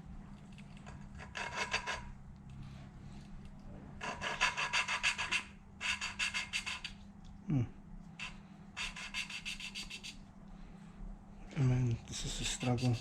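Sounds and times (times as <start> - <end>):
person grunting: 7.5 - 7.7.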